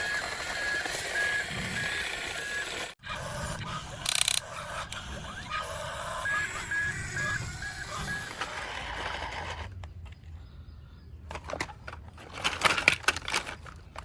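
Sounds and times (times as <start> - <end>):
electronic beeps: 0.0 - 8.8.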